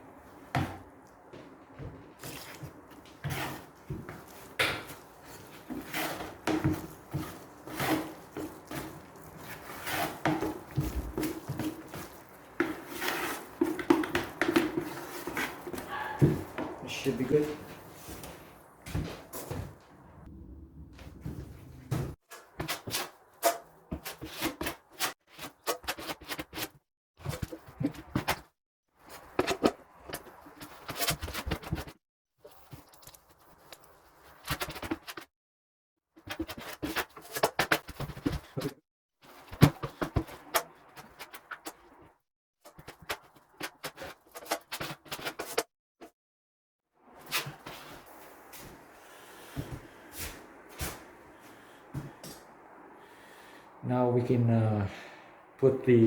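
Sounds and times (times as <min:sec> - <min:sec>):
tool scraping thick mud: 0:03.2 - 0:15.7.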